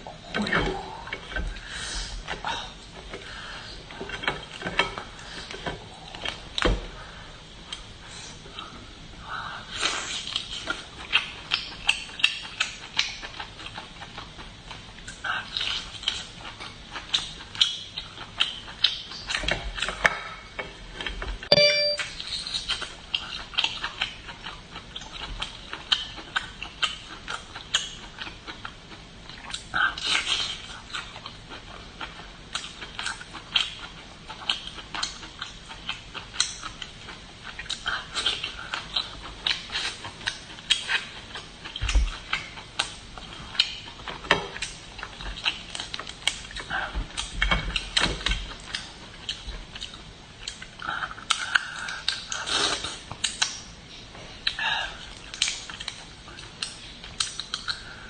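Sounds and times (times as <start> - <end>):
wet chewing and smacking: 9.8 - 20.1, 22.2 - 58.0.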